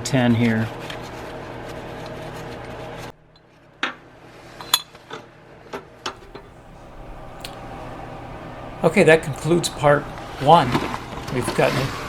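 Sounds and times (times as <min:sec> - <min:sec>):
steady low hum: 0:06.1 - 0:12.0.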